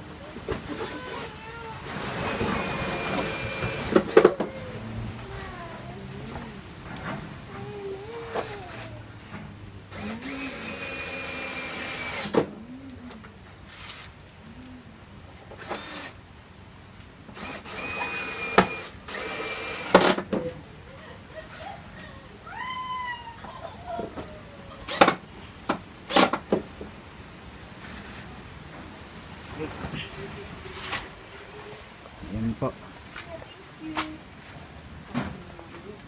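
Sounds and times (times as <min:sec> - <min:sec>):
electric drill driving screws: 0:00.5 - 0:04.5, 0:08.2 - 0:09.0, 0:09.9 - 0:12.5, 0:15.5 - 0:16.2, 0:17.3 - 0:20.4, 0:24.9 - 0:25.3, 0:26.1 - 0:26.4.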